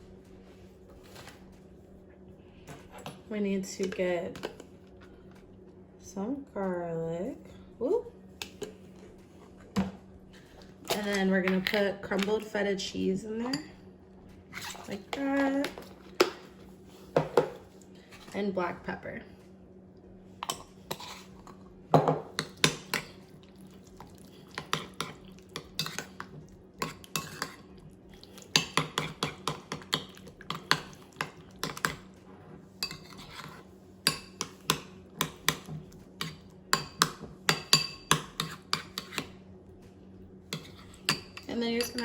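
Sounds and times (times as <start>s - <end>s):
spoon clinking and scraping bowl: 20.4s - 21.6s, 24.4s - 27.8s, 28.4s - 32.0s, 32.8s - 39.3s, 40.5s - 42.0s.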